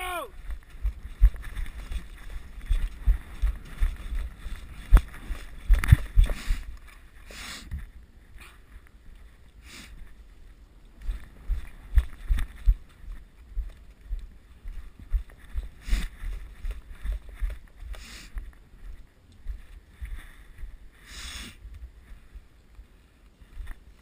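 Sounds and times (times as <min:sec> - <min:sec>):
low thumps and rustling of gear: 0:00.4 - 0:21.0, 0:21.6 - 0:24.0
short hissing rustles: 0:06.3 - 0:07.8, 0:21.0 - 0:21.6.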